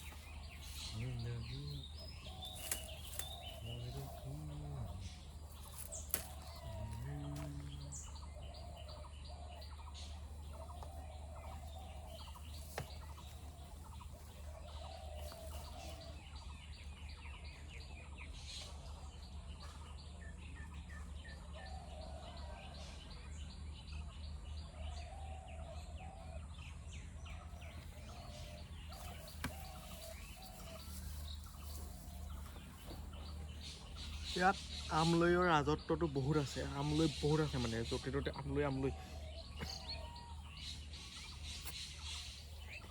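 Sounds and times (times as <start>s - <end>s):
high bird chirps and trills: 0.0s - 6.7s
low bird call: 27.6s - 35.4s, 36.4s - 42.9s.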